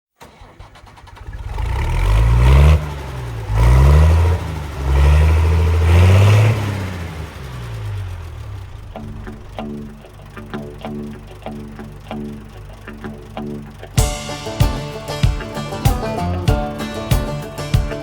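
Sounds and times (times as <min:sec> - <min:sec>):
engine revving: 0:00.2 - 0:14.0.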